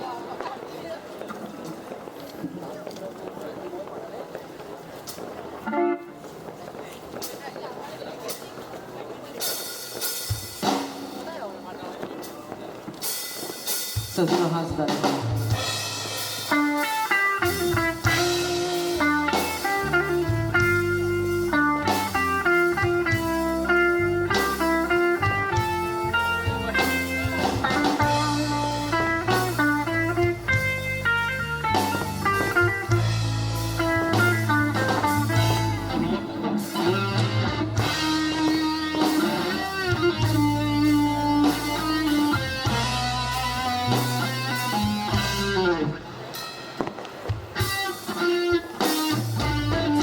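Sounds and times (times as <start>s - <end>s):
drum kit: 5.0s - 50.0s
electric guitar lead melody: 5.6s - 6.3s, 14.6s - 50.0s
bass guitar: 12.8s - 50.0s.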